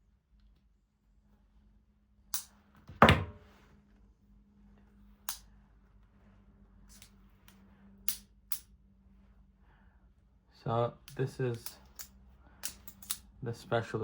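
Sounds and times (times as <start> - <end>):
multitool clicking open and shut: 2.3 - 2.5, 6.9 - 7.1, 11.1 - 13.3.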